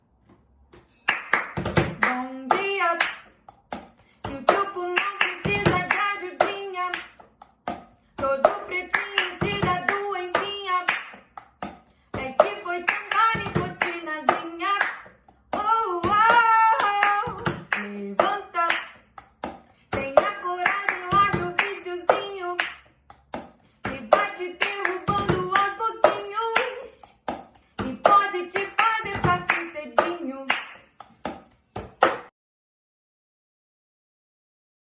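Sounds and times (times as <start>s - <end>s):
sharp claps: 0.8s - 32.3s
person singing: 2.0s - 3.2s, 4.3s - 7.0s, 8.2s - 10.9s, 12.2s - 15.0s, 15.6s - 18.9s, 19.9s - 22.6s, 23.9s - 27.1s, 27.8s - 30.5s.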